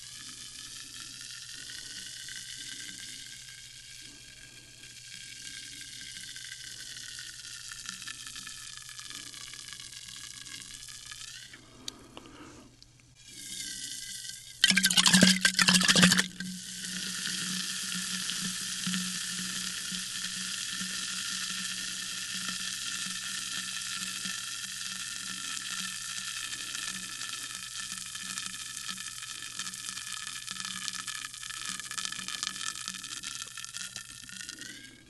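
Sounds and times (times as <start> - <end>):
sparkling water fizzing: 13.8 - 34.7
liquid pouring: 14.6 - 22.0, 27.0 - 35.0.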